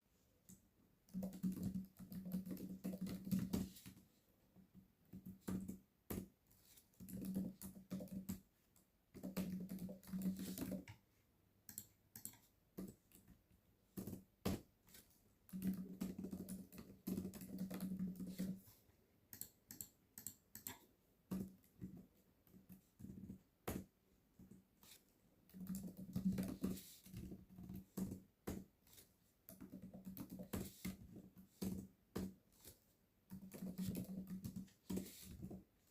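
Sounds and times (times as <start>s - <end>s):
typing on computer keyboard: 1.1s - 3.8s, 7.0s - 8.4s, 9.2s - 10.9s, 11.7s - 13.2s, 15.5s - 18.6s, 19.3s - 21.6s, 25.5s - 28.1s, 33.3s - 35.0s
mouse clicks: 19.3s - 20.9s.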